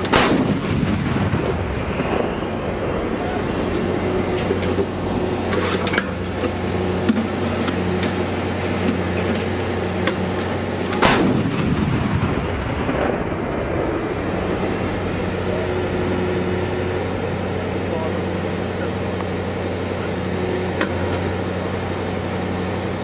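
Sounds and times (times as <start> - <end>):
artillery gun blast: 0.0 - 3.2, 10.9 - 17.5
engine hum: 0.0 - 23.0.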